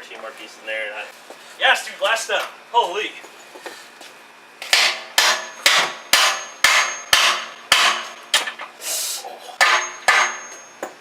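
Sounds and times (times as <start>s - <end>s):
hammer blows on metal: 4.7s - 8.4s, 9.6s - 11.0s.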